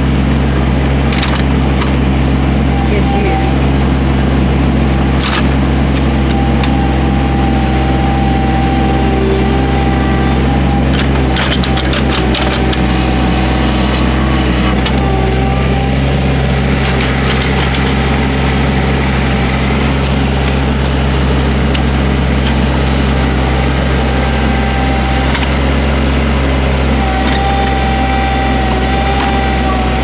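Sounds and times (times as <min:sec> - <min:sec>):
excavator diesel engine running: 0:00.0 - 0:30.0.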